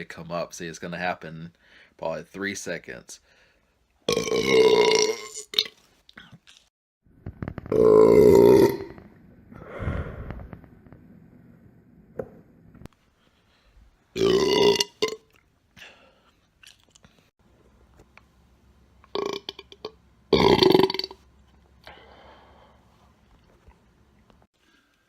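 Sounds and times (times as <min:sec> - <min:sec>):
man belching: 0:04.1 - 0:05.7, 0:07.7 - 0:09.0, 0:14.2 - 0:15.2, 0:19.1 - 0:21.2.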